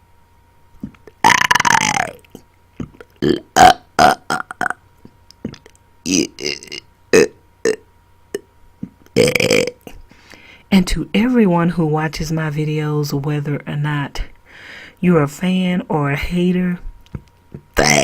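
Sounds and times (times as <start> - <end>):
person belching: 0.8 - 4.8, 5.4 - 10.0, 17.8 - 18.0.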